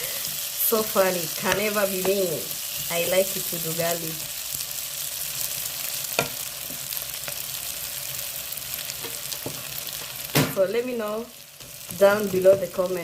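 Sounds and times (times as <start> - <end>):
fish sizzling in a pan: 0.0 - 13.0.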